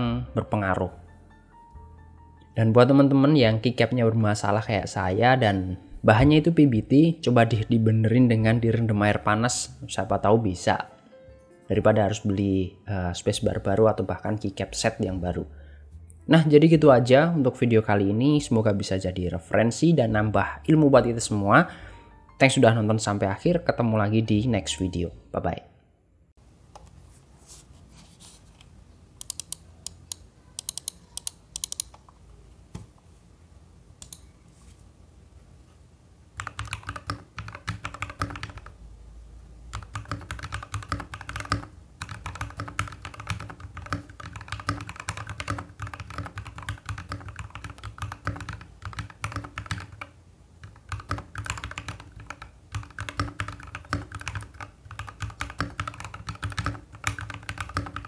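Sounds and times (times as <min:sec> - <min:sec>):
mechanical keyboard typing: 0:29.2 - 0:32.0, 0:36.4 - 0:38.8, 0:39.7 - 0:58.0.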